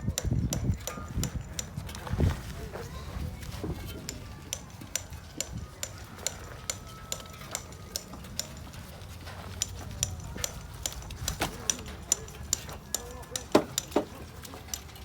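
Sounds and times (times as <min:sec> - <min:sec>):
light metallic ticks: 0:03.9 - 0:15.0.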